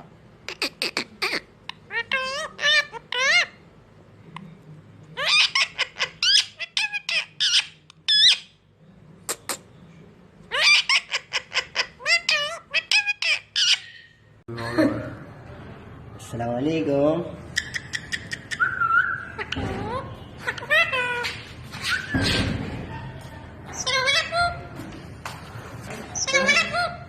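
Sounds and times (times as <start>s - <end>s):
parrot squawking: 0.4s - 3.7s, 5.2s - 8.6s, 10.5s - 14.3s, 17.5s - 24.8s, 26.1s - 27.0s.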